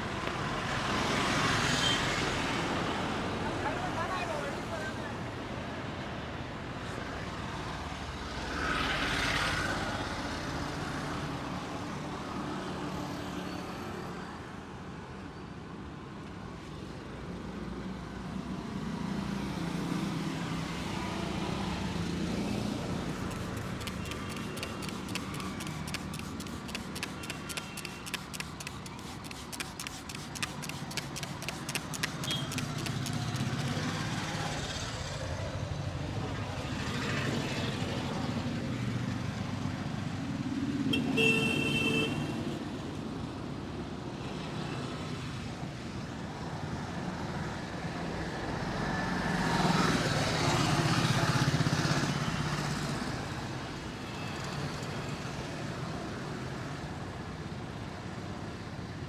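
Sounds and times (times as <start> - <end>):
street traffic noise: 0.0 - 59.0
quick even taps: 23.1 - 33.9.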